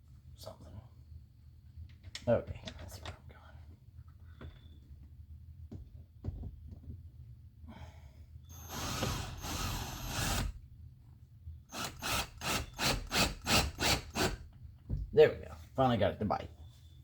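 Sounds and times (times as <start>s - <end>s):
cordless drill running: 8.5s - 10.6s, 11.7s - 14.4s.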